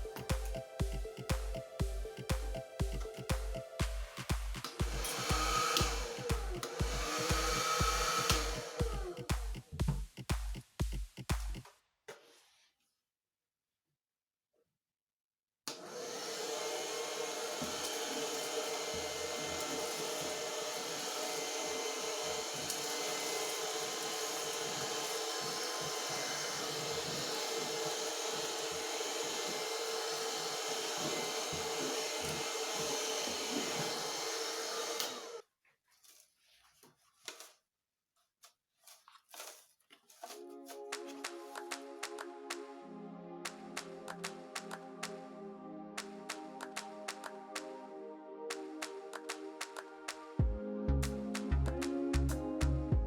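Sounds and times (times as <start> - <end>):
vacuum cleaner motor whine: 4.7 - 9.2, 15.7 - 35.4.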